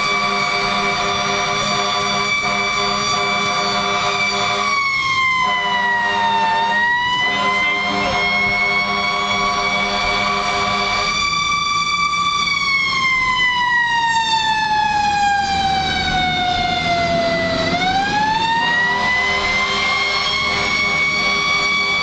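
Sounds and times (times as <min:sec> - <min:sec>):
fire engine siren wailing: 0:00.0 - 0:22.0
truck engine rumbling: 0:00.0 - 0:22.0.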